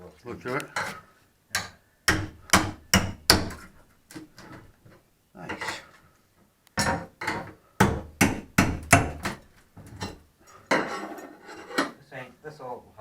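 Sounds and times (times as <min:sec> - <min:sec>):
hammer whacking sink vanity: 0:01.6 - 0:03.7, 0:06.8 - 0:09.4.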